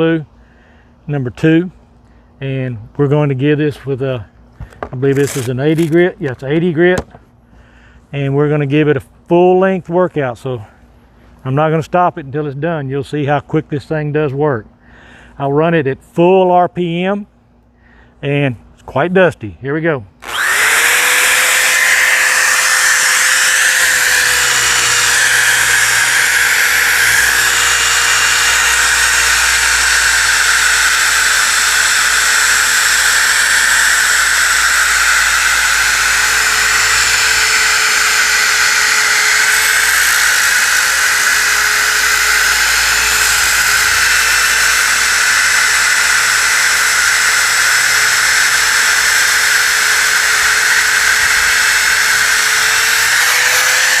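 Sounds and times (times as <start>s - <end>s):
disc sander high whine: 20.2s - 54.0s
sanding disc rasping on wood: 20.3s - 54.0s.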